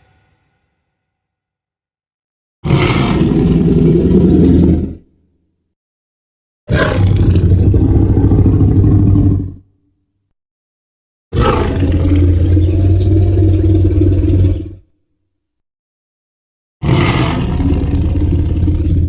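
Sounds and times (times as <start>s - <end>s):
dinosaur roars: 2.6s - 5.1s, 6.7s - 9.6s, 11.3s - 14.8s, 16.8s - 19.0s.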